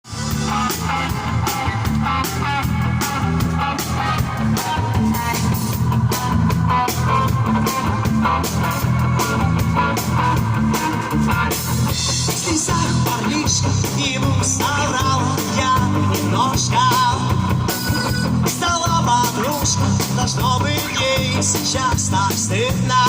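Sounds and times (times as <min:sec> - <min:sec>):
bass line: 0:00.0 - 0:23.0
guitar: 0:00.0 - 0:23.0
steady drum beat: 0:00.0 - 0:23.0.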